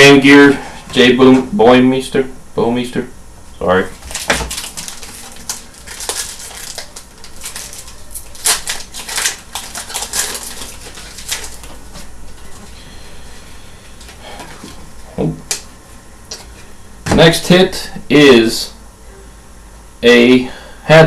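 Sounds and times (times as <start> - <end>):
card wrappers crinkling: 3.9 - 12.7.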